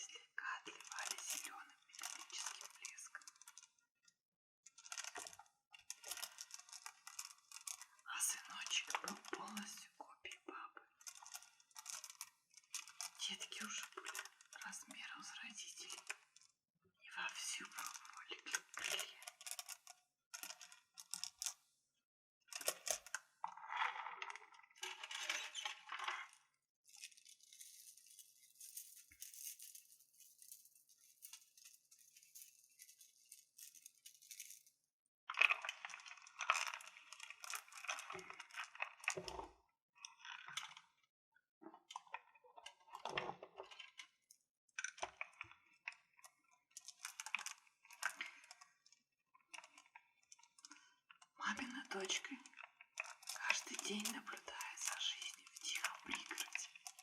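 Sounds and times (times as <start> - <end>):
crystals clinking together: 26.9 - 34.8, 53.0 - 57.0.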